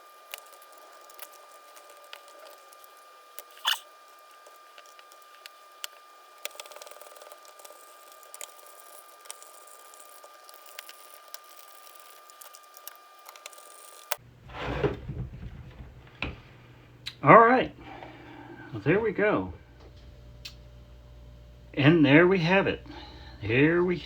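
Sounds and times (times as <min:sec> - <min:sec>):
faint high whine: 0:00.0 - 0:14.2
rustling: 0:00.0 - 0:16.6.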